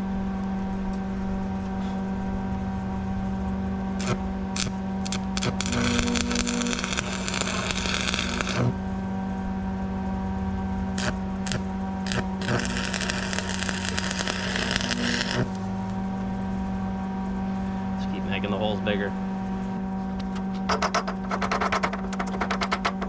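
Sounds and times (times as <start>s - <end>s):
welding rod tapping: 4.0s - 8.7s, 11.0s - 16.0s
welder humming: 4.0s - 8.8s, 11.0s - 16.0s
welding arc crackling: 4.0s - 8.8s, 11.0s - 16.0s.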